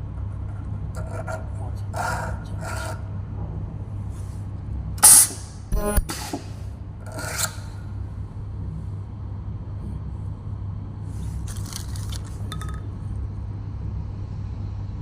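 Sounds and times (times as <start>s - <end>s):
machine low hum: 0.0s - 15.0s
plastic parts scraping: 11.4s - 12.8s.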